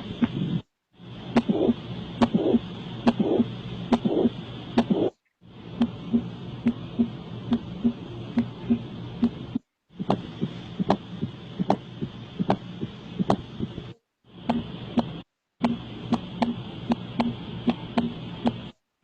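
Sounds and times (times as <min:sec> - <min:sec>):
heartbeat thumps and clicks: 0:00.0 - 0:00.6, 0:01.4 - 0:05.2, 0:05.8 - 0:18.7.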